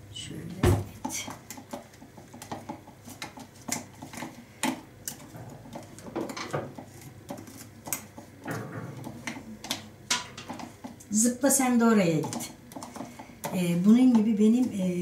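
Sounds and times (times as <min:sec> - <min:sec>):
soft fruit being mashed: 0:00.8 - 0:11.1, 0:12.1 - 0:15.0.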